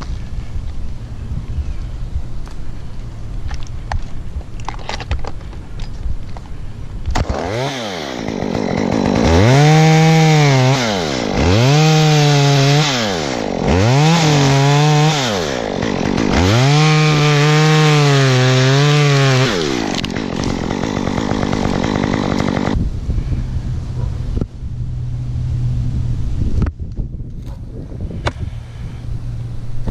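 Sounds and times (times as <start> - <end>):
chainsaw engine revving: 7.1 - 22.8.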